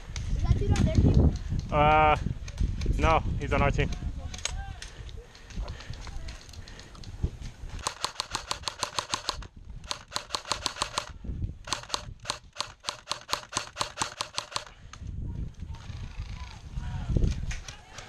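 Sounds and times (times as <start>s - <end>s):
airsoft gun rapid fire: 7.8s - 14.7s.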